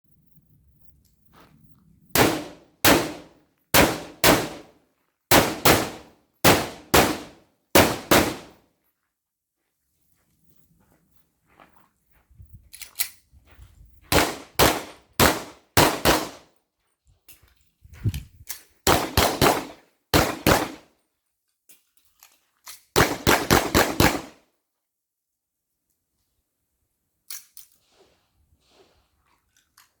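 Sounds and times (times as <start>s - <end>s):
rifle gunshots: 2.1s - 4.7s, 5.3s - 8.6s, 14.1s - 16.4s, 18.8s - 20.8s, 23.0s - 24.4s.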